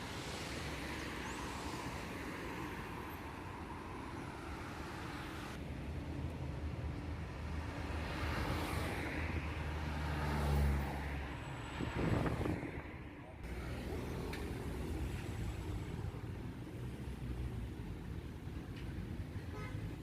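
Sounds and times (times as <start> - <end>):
road traffic rumble: 0.0 - 20.0
vehicle passing: 7.9 - 16.2.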